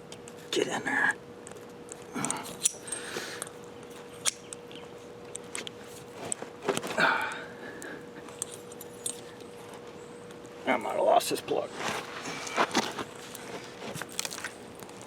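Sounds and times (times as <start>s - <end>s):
faint steady hum: 0.0s - 15.0s
metal tool clicks and scraping: 1.9s - 4.6s.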